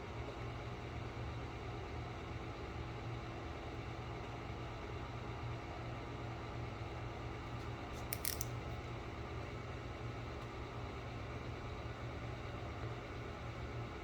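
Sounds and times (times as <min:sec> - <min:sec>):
sharp clicks: 0:08.2 - 0:08.5.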